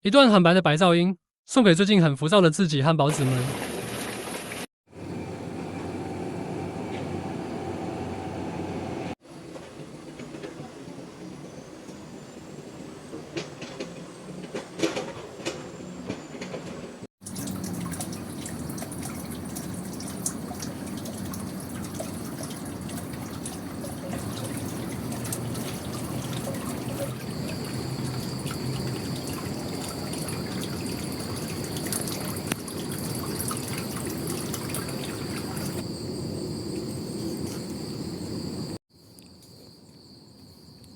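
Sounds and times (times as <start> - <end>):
water drips: 17.2 - 35.8
water trickling: 17.2 - 35.9
high insect drone: 21.4 - 40.9.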